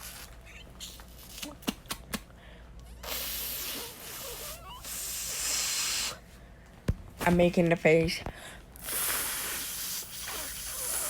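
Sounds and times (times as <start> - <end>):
person hissing: 3.0 - 6.2, 8.8 - 11.0.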